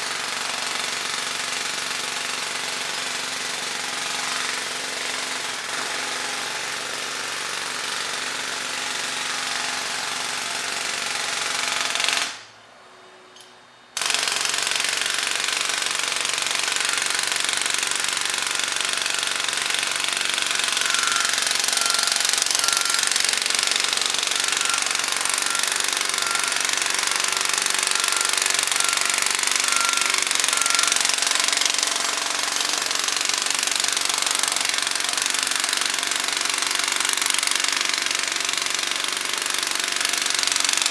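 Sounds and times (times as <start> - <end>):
jackhammer pounding: 0.0 - 12.5, 14.0 - 40.9
heavy equipment running: 18.4 - 32.6
high electronic warning beeps: 20.5 - 31.3.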